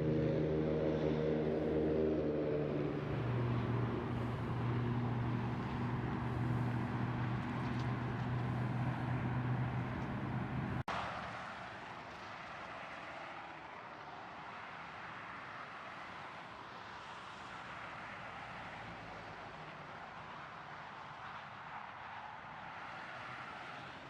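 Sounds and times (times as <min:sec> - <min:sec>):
car engine hum: 0:00.0 - 0:10.9
road noise: 0:00.0 - 0:24.0.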